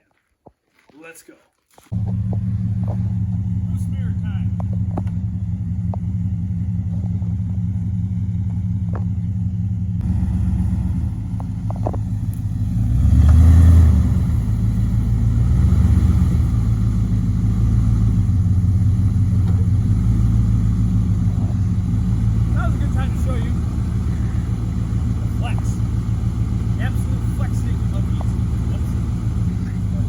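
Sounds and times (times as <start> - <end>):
truck engine running at low revs: 1.9 - 30.0.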